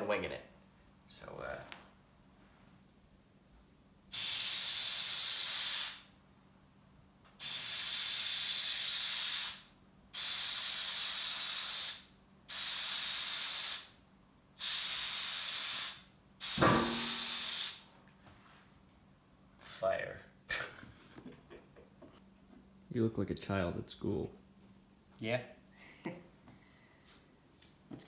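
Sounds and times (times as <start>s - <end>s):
airbrush spraying paint: 4.1s - 6.1s, 7.4s - 14.0s, 14.6s - 17.8s.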